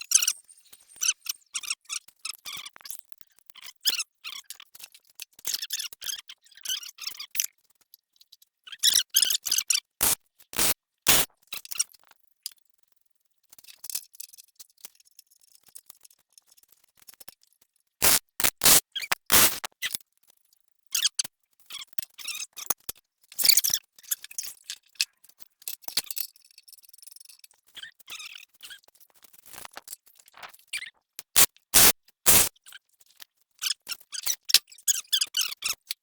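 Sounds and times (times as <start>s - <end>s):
welding arc crackling: 10.0s - 11.3s, 18.0s - 19.7s, 31.3s - 32.5s.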